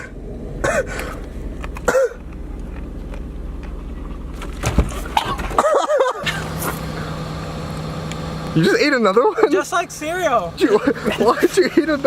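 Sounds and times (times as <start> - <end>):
low rumble: 0.0 - 8.6.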